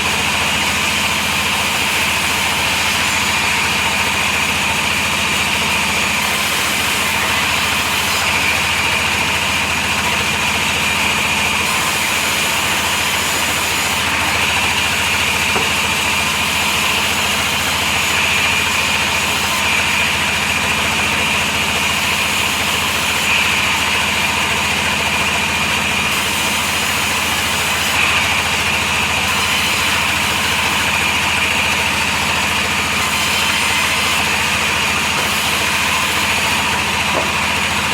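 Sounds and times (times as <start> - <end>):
sawmill saw cutting log: 0.0 - 37.9.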